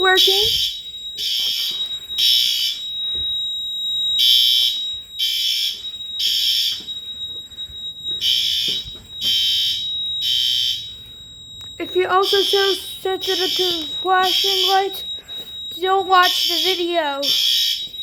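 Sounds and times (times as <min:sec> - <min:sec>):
steady high tone: 0:00.0 - 0:00.7, 0:06.4 - 0:17.4
fire alarm horn blasts: 0:00.0 - 0:18.0.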